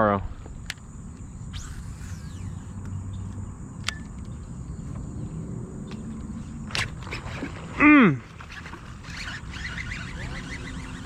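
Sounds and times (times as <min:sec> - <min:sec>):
crickets and insects chirping: 0:00.0 - 0:11.0
sharp click: 0:00.6 - 0:04.4.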